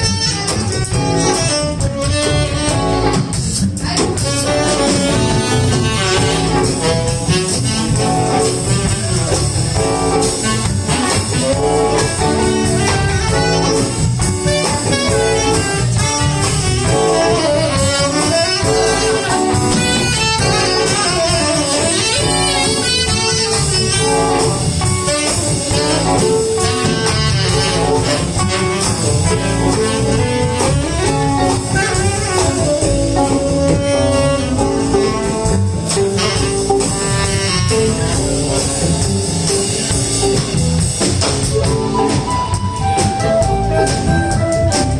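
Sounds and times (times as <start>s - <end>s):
bass: 0.0s - 44.9s
drum beat: 0.0s - 44.9s
electric guitars: 0.0s - 44.9s
saxophone: 0.0s - 44.9s.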